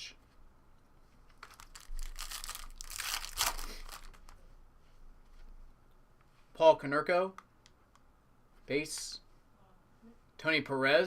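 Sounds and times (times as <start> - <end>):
card pack wrapper crinkling: 1.4 - 4.4.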